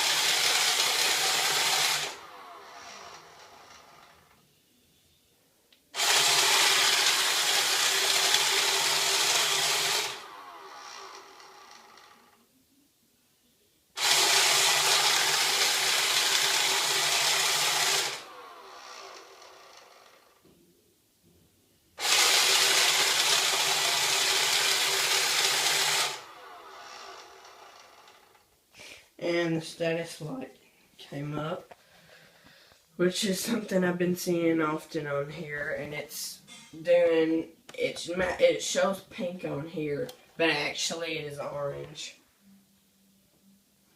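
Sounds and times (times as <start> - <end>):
robot vacuum motor humming: 0.0 - 4.2, 6.0 - 12.2, 14.0 - 20.3, 22.0 - 28.2.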